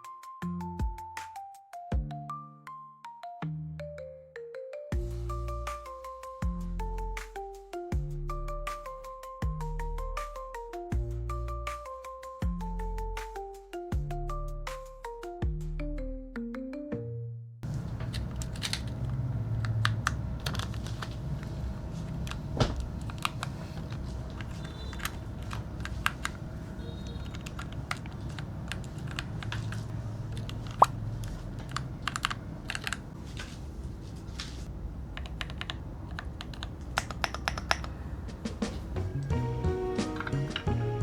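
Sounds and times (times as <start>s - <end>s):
typing on mechanical keyboard: 17.6s - 33.2s, 34.6s - 39.0s.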